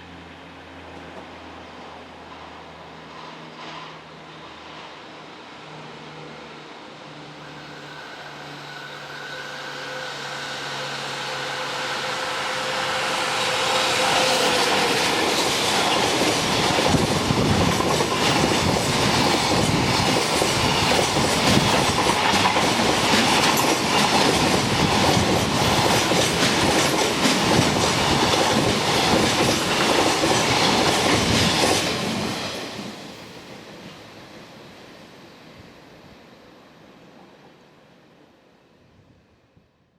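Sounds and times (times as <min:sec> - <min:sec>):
locomotive passing: 0:00.1 - 0:34.2
train wheels clattering on rails: 0:12.0 - 0:33.3.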